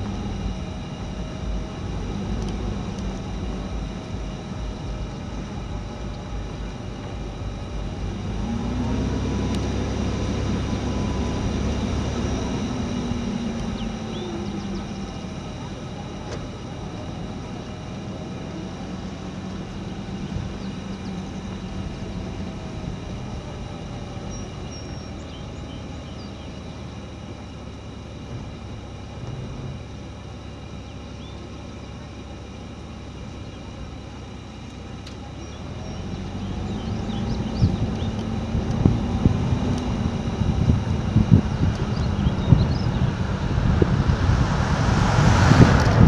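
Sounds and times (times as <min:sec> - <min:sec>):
engine drone: 0:00.0 - 0:46.0
wind buffeting microphone: 0:36.3 - 0:46.0.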